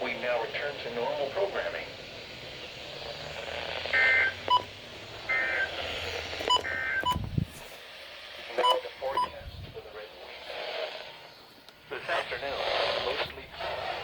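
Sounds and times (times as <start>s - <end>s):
warbling data tones: 2.9s - 7.3s
short beeps: 4.0s - 4.7s.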